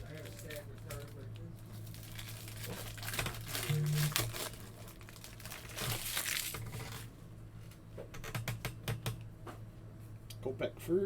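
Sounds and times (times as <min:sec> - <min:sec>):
foil wrapper crinkling and tearing: 0:00.0 - 0:07.1.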